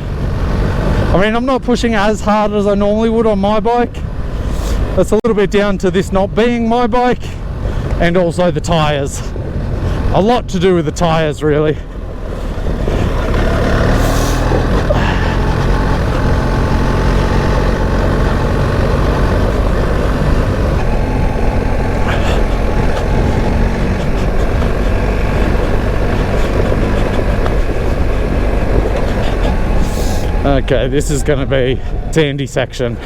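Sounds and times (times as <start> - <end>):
motorcycle engine running: 11.8 - 32.1.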